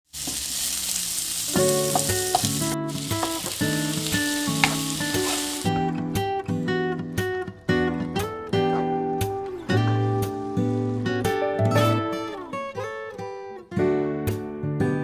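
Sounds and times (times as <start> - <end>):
food sizzling in a pan: 0.0 - 5.9, 9.1 - 11.4
strummed acoustic guitar music: 1.5 - 15.0.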